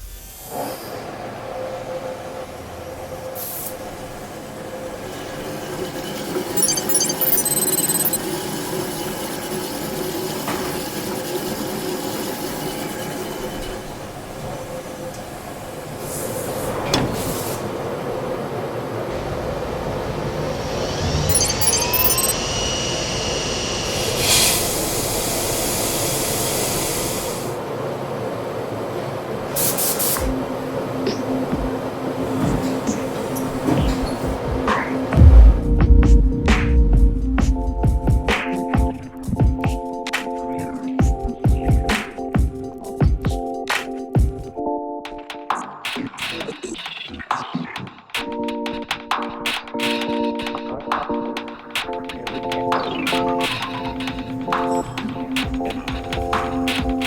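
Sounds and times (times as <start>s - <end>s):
factory machinery humming: 0.0s - 37.9s
hiss: 22.4s - 27.6s.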